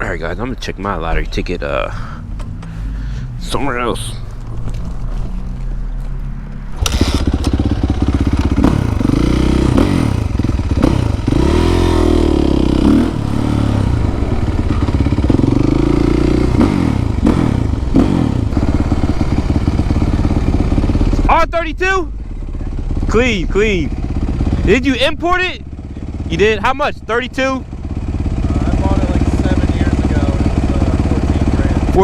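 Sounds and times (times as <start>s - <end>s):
motorcycle engine revving hard: 6.7s - 21.5s, 27.7s - 32.0s.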